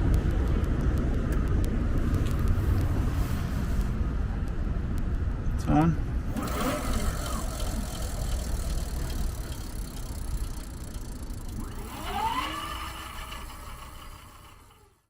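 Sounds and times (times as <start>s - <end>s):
steady low rumble: 0.0s - 12.0s
electric bike motor whining: 6.2s - 15.0s.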